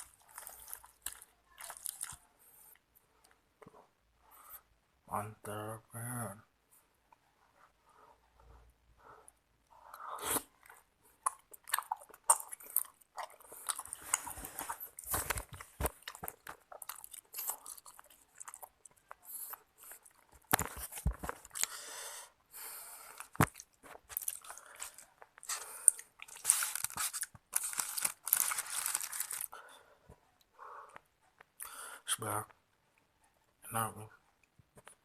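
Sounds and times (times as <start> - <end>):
wet chewing and biting: 0.0 - 2.2, 10.2 - 21.8, 23.1 - 29.5.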